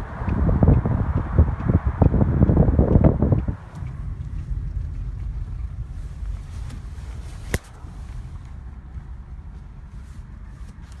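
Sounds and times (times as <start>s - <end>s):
car driving rumble: 0.0s - 11.0s
sharp click: 7.5s - 7.8s.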